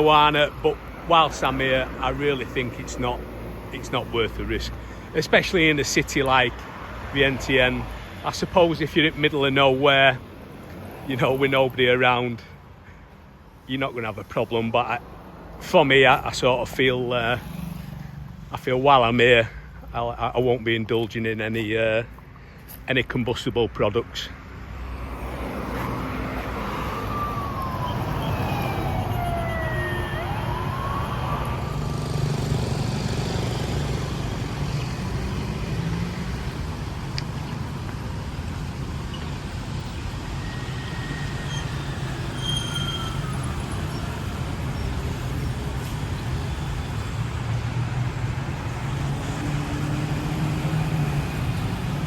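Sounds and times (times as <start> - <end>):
street traffic rumble: 0.0 - 52.0
sliding whistle-like tones: 40.4 - 44.0.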